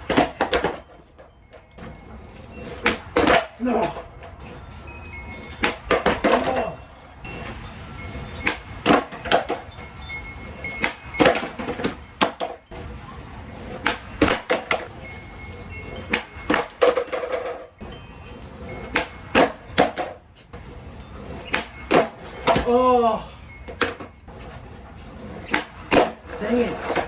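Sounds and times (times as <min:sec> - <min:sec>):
skateboard clacking on pavement: 0:00.0 - 0:22.9, 0:23.7 - 0:27.0
low wind rumble: 0:04.0 - 0:16.6.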